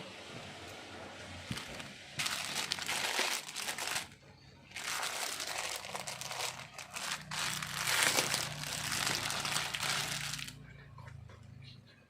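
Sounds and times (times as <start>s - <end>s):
packaging crinkling: 1.5s - 10.6s.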